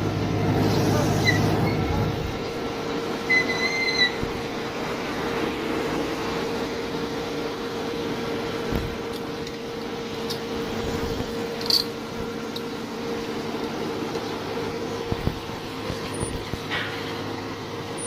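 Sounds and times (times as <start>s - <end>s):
excavator engine with hydraulic whine: 0.0s - 18.0s
metallic squeal: 1.1s - 2.1s, 3.2s - 4.2s.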